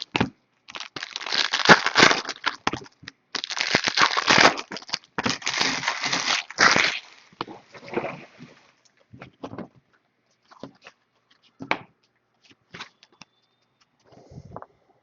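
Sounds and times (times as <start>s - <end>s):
pack wrapper crinkling: 0.0s - 7.4s.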